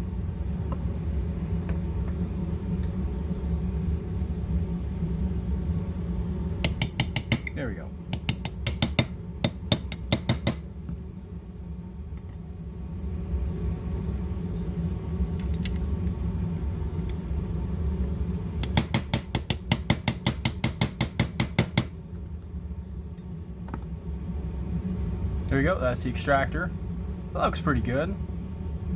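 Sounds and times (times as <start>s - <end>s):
steady low hum: 0.0s - 28.9s
small hammer tapping metal punch: 6.6s - 7.5s, 8.1s - 10.6s, 18.6s - 21.9s.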